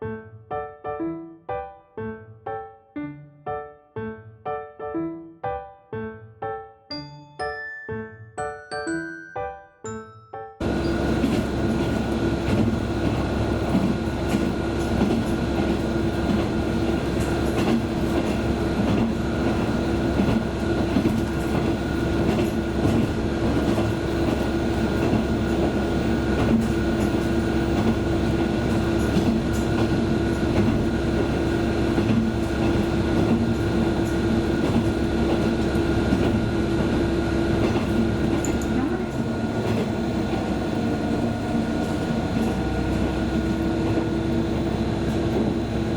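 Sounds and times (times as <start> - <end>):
running gear whine: 10.6 - 45.9
train rumbling on rails: 10.6 - 45.9.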